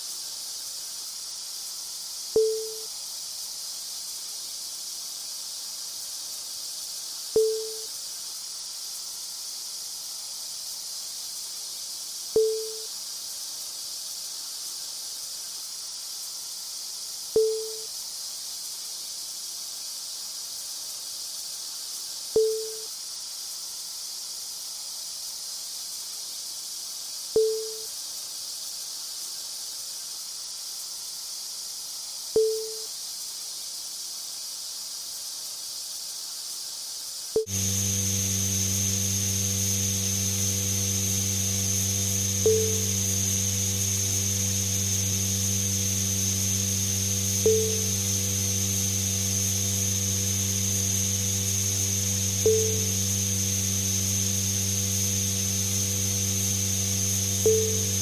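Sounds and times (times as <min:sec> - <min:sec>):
high-pitched electrical hiss: 0:02.4 - 0:02.9, 0:07.4 - 0:07.9, 0:12.4 - 0:12.9, 0:17.4 - 0:17.9, 0:22.4 - 0:22.9, 0:27.4 - 0:27.9, 0:32.4 - 0:33.0, 0:37.4 - 0:58.0.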